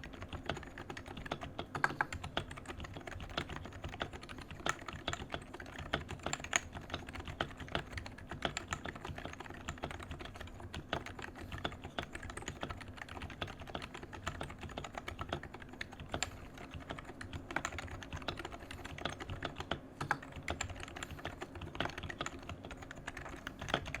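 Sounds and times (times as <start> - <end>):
fast keyboard typing: 0.0 - 24.0.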